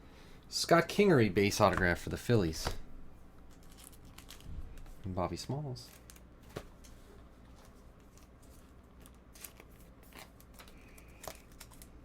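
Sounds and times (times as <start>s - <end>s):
trading cards being handled: 3.5s - 5.0s, 5.8s - 12.0s.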